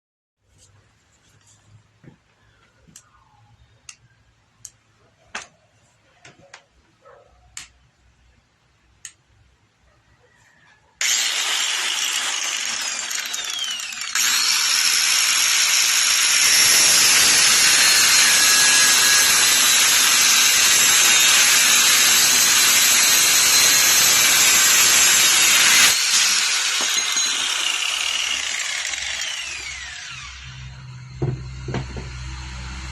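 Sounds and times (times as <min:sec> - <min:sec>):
angle grinder running: 0:11.0 - 0:32.9
grinding disc cutting steel bar: 0:11.0 - 0:32.9.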